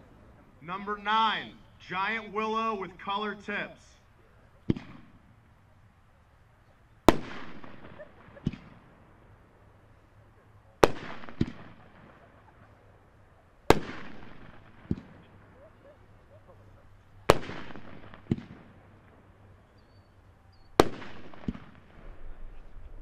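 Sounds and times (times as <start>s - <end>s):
loud firework aerial burst: 7.0s - 9.1s, 13.7s - 15.5s, 17.2s - 18.8s.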